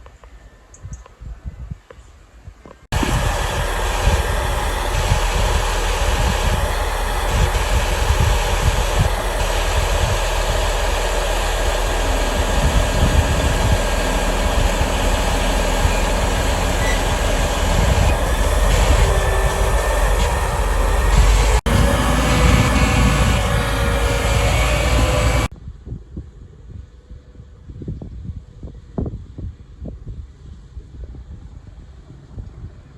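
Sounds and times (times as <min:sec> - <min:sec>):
harvester machine drone: 0:02.9 - 0:25.5.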